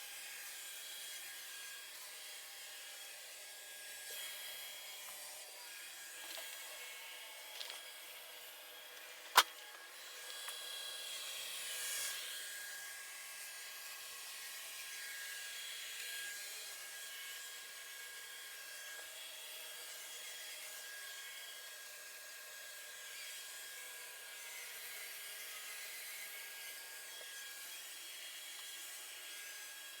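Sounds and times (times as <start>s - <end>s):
robot vacuum cleaner whirring: 4.0s - 13.2s.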